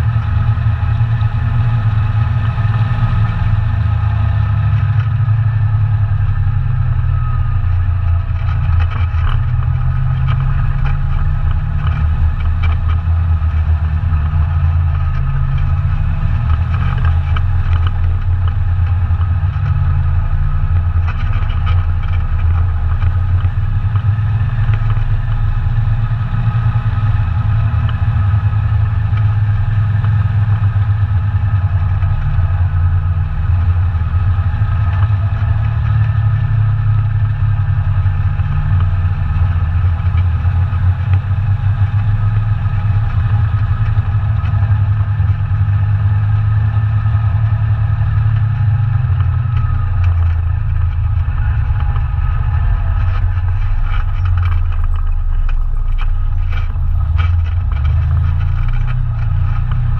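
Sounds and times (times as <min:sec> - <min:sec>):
atv engine running: 0:00.0 - 0:59.9
rattles and knocks: 0:48.2 - 0:59.9.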